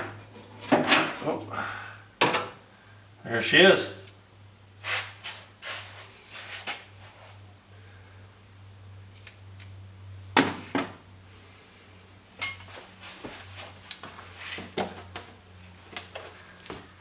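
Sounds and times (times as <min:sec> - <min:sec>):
metal tools clinking and knocking: 0:12.4 - 0:12.8.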